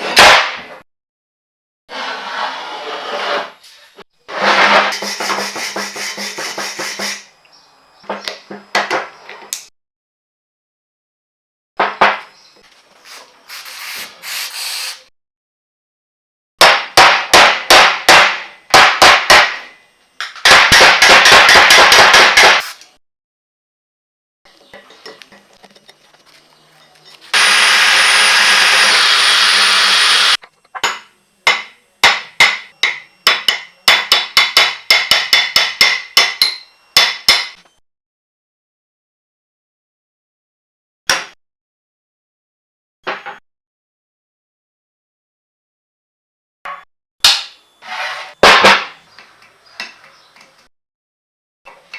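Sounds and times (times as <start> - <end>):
hammer striking metal: 16.6 - 19.8, 20.4 - 22.7, 30.8 - 37.6.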